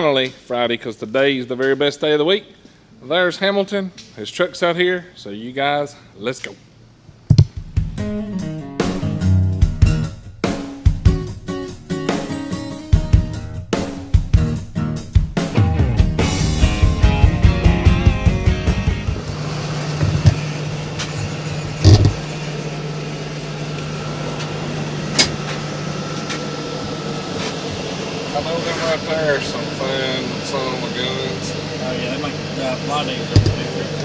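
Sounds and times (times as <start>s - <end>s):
loud thump: 7.3s - 7.6s, 20.0s - 20.4s, 33.4s - 33.6s
drum beat: 7.3s - 8.0s, 20.0s - 20.5s, 33.4s - 33.7s
vehicle engine idling: 18.4s - 34.0s.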